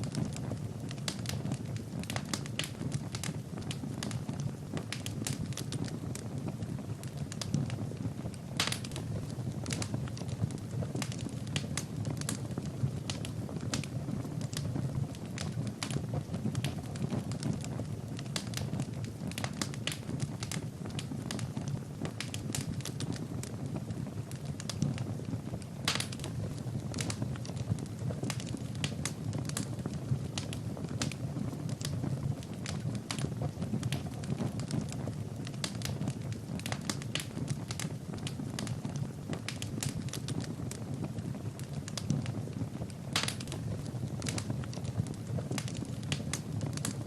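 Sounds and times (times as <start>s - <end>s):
low rumble of burning fire: 0.0s - 47.0s
wood fire crackling and popping: 0.0s - 47.0s.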